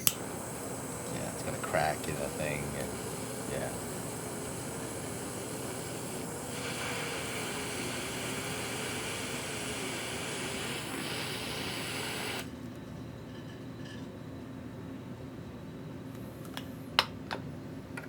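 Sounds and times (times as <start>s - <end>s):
electric blower motor humming: 0.0s - 12.6s.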